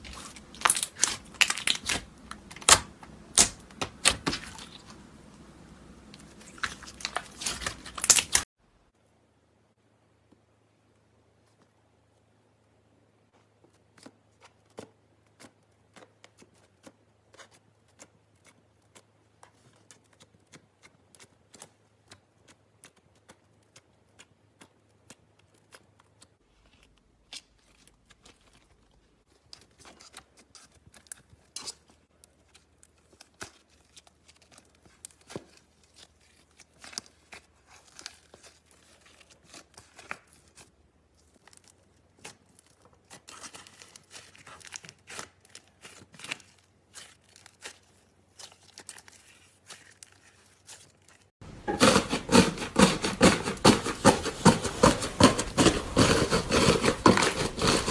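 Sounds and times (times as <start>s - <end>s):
slime clicking and crackling: 0.0s - 5.0s, 6.1s - 8.4s, 14.0s - 51.3s.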